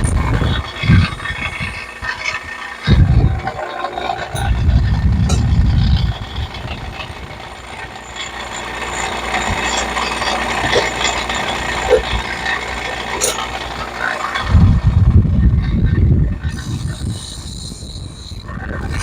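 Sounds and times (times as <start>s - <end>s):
metallic rattles and clicks: 0.0s - 15.2s
shop tool motor humming: 0.0s - 19.0s.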